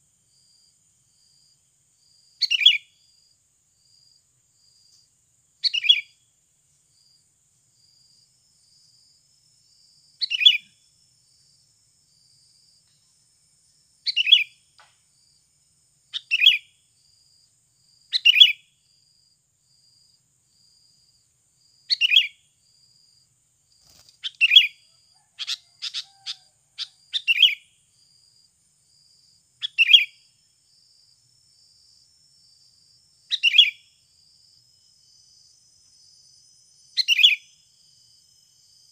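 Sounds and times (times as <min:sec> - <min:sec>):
bird call phrases: 0:02.4 - 0:02.8, 0:05.6 - 0:06.2, 0:10.2 - 0:10.7, 0:14.0 - 0:14.6, 0:16.1 - 0:16.7, 0:18.1 - 0:18.6, 0:21.9 - 0:22.4, 0:24.2 - 0:24.8, 0:25.4 - 0:27.6, 0:29.6 - 0:30.2, 0:33.3 - 0:33.8, 0:37.0 - 0:37.5.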